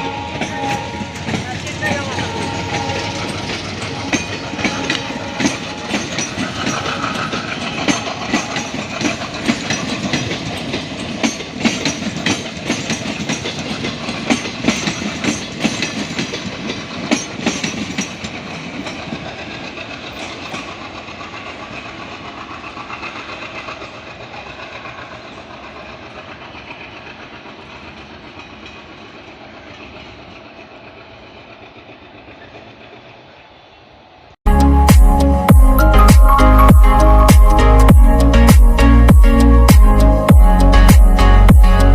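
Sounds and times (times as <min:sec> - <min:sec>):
train wheels clicking over rail joints: 0:00.3 - 0:33.2.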